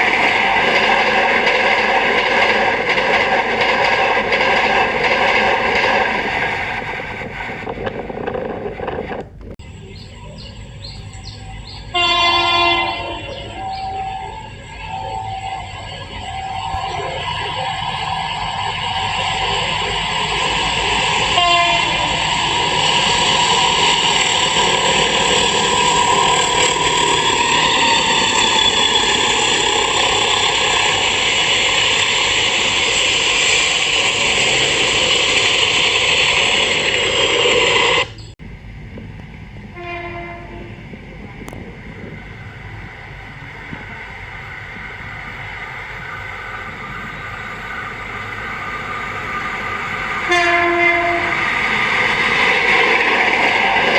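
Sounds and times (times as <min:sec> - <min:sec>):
train running noise: 0:00.0 - 0:53.9
train air horn: 0:11.9 - 0:14.4, 0:21.1 - 0:22.9, 0:39.7 - 0:40.8, 0:50.2 - 0:51.6.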